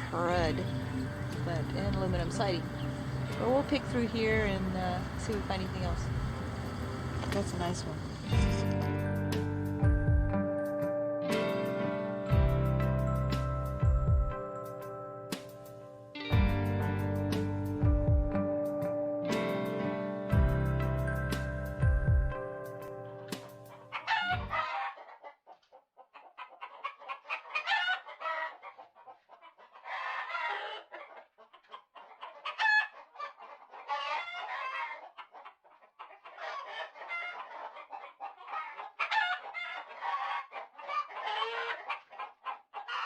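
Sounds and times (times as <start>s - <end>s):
chickens clucking and crowing: 0.0s - 9.2s, 23.4s - 43.0s.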